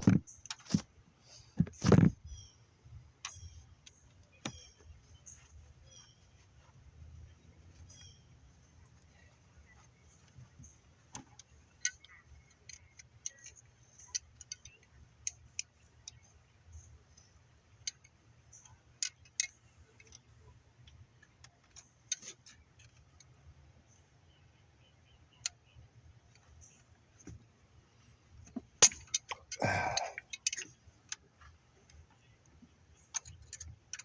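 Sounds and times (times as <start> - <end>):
faint low hum: 0.0 - 34.0
tools clicking and clinking: 28.5 - 31.2.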